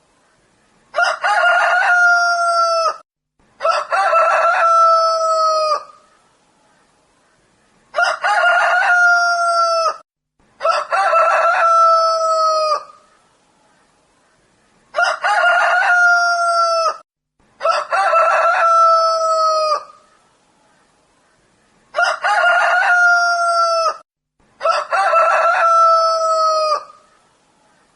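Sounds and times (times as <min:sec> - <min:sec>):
rooster crowing: 0:00.9 - 0:03.0, 0:03.6 - 0:06.0, 0:07.9 - 0:10.0, 0:10.6 - 0:13.0, 0:14.9 - 0:17.0, 0:17.6 - 0:20.0, 0:21.9 - 0:24.0, 0:24.6 - 0:27.1.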